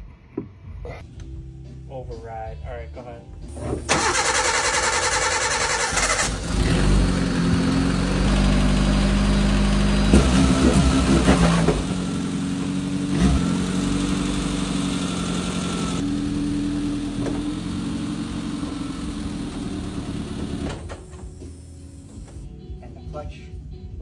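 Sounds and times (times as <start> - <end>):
car engine running: 3.5 - 22.4.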